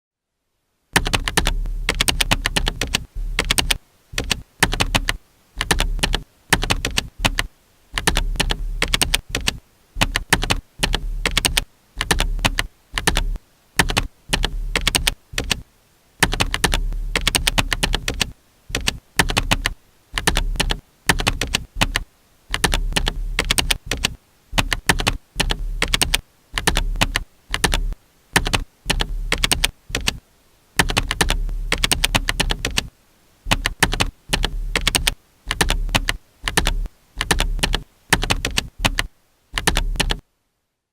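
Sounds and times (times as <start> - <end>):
typing on computer keyboard: 1.0 - 15.6, 16.2 - 30.2, 30.8 - 32.9, 33.5 - 40.2.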